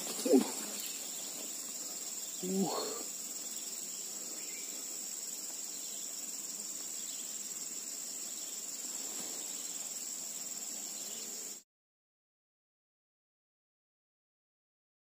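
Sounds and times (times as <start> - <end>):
high-pitched insect drone: 0.0 - 11.6.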